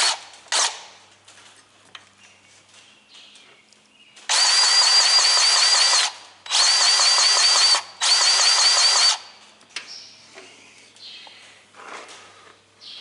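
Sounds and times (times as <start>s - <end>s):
battery grease gun whining: 4.3s - 9.3s.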